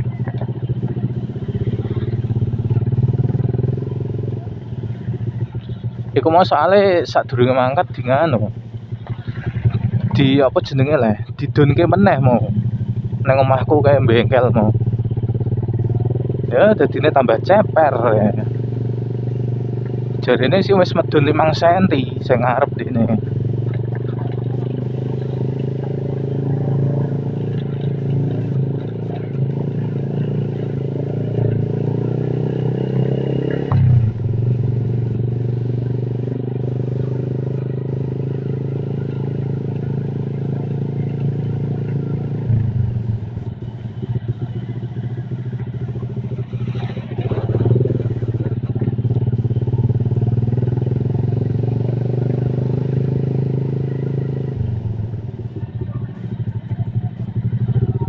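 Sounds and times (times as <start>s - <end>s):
motorcycle engine running: 0.0s - 58.0s
road noise: 0.0s - 58.0s.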